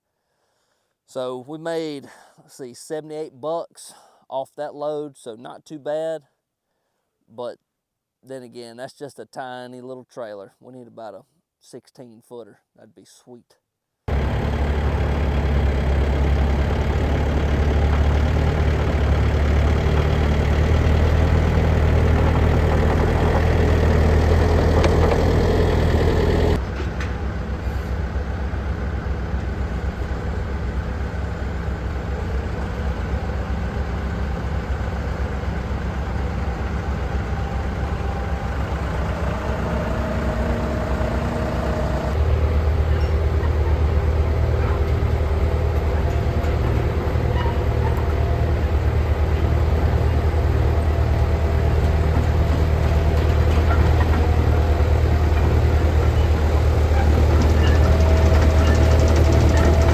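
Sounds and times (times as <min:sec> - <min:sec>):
engine droning: 0:14.1 - 0:59.9.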